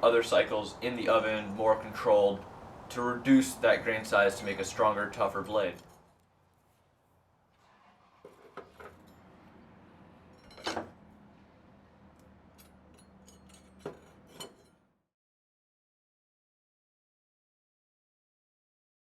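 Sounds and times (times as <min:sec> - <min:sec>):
metallic clinks and knocks: 0:08.3 - 0:09.4, 0:10.3 - 0:11.0, 0:12.1 - 0:14.8.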